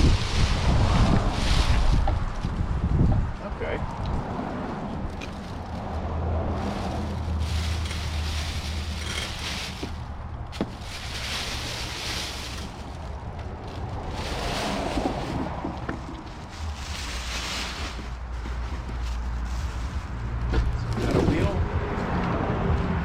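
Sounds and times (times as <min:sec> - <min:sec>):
wind buffeting microphone: 0:00.0 - 0:08.8.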